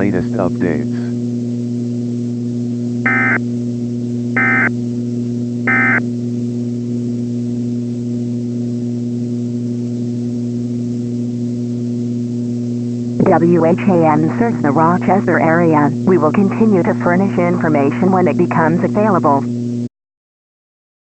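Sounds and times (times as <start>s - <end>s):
low electrical hum: 0.0s - 19.9s
data tone bursts: 3.0s - 3.4s, 4.4s - 4.7s, 5.7s - 6.0s.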